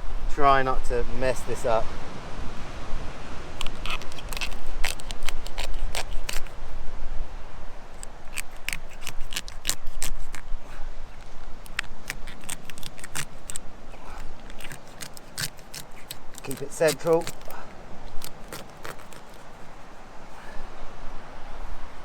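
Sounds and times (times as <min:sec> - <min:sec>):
knife cracking lobster shell: 0:03.6 - 0:06.6, 0:08.0 - 0:19.5.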